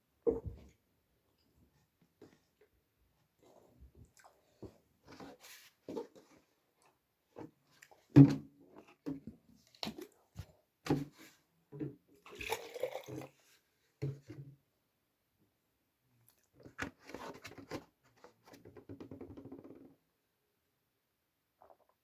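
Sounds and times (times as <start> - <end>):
sipping and swallowing: 12.3 - 13.3.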